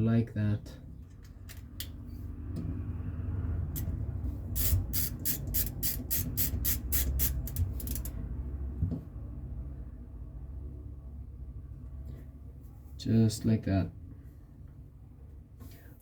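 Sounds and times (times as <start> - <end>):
ratchet wrench clicking: 3.8 - 8.1.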